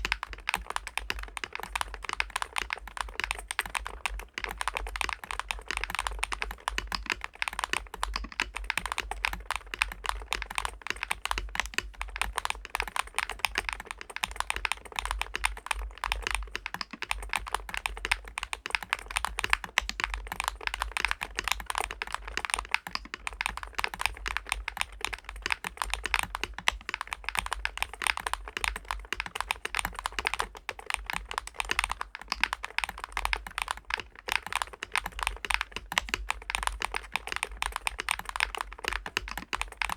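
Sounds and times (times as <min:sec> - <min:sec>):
fast keyboard typing: 0:00.0 - 0:39.9.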